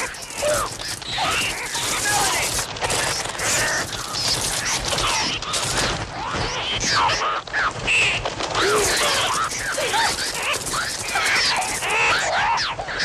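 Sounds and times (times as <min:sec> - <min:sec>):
continuous rapid rattle: 0:00.0 - 0:13.0.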